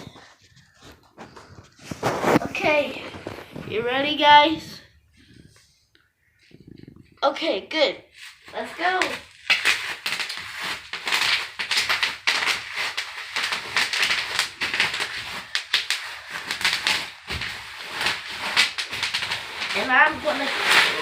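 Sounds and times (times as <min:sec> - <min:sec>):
rapid crackling and popping: 0:00.0 - 0:07.5, 0:08.1 - 0:21.0.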